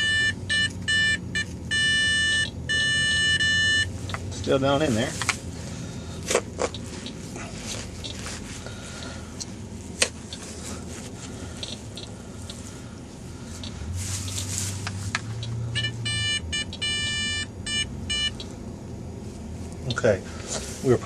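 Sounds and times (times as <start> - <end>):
metal detector beeps: 0.0 - 3.9, 15.7 - 18.5.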